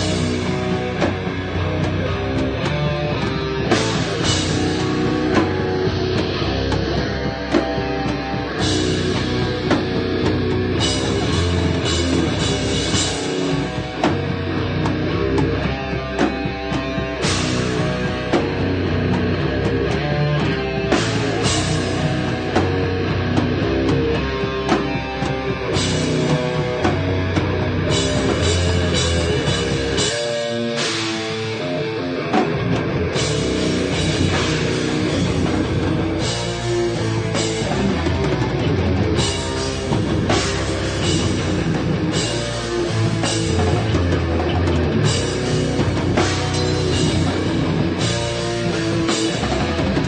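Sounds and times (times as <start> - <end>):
drum kit: 0.0 - 50.0
electric guitar: 0.0 - 50.0.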